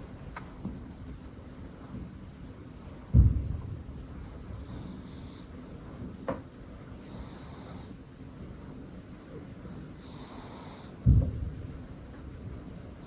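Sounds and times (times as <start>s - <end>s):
low thump: 3.1s - 3.8s, 11.1s - 11.6s
cat snoring: 4.6s - 5.8s, 7.0s - 8.0s, 10.0s - 11.0s.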